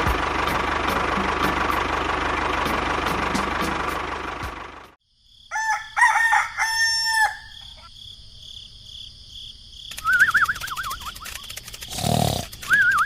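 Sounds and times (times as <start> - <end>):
rooster crowing: 5.5 - 7.9.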